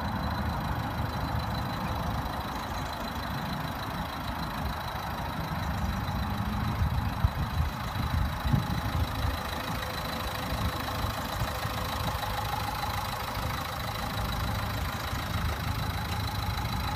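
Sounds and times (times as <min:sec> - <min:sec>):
diesel engine idling: 0:00.0 - 0:16.9
engine bumps: 0:00.0 - 0:16.9.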